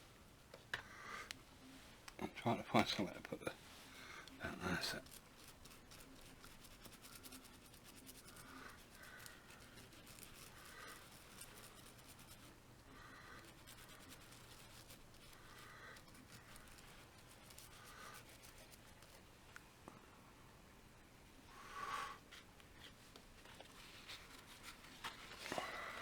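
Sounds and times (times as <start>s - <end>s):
small brush scratching circuit board: 4.3s - 19.2s.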